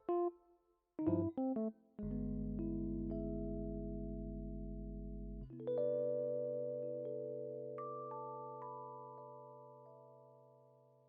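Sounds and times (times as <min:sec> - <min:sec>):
electric piano notes and chords: 0:00.0 - 0:00.4, 0:01.0 - 0:11.0
steady low bass: 0:02.0 - 0:05.5.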